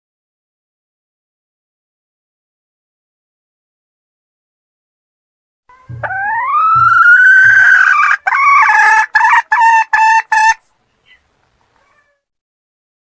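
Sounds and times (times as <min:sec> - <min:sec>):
junglefowl calling: 0:05.7 - 0:11.3.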